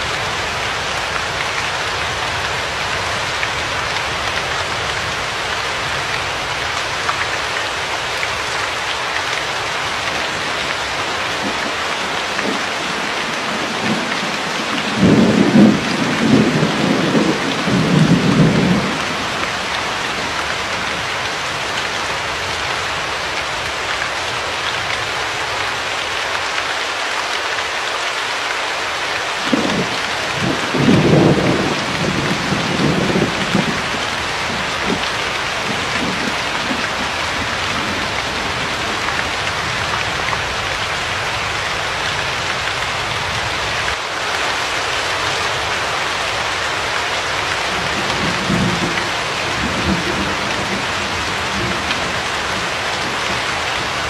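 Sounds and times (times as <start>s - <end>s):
heavy rain hissing: 0.0s - 54.0s
thunder rumbling: 10.2s - 20.4s, 29.5s - 40.2s, 47.6s - 54.0s.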